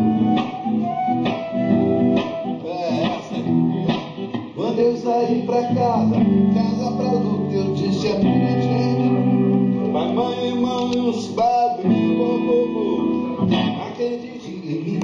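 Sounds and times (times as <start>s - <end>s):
guitar playing: 0.0s - 15.0s
person singing: 2.2s - 15.0s.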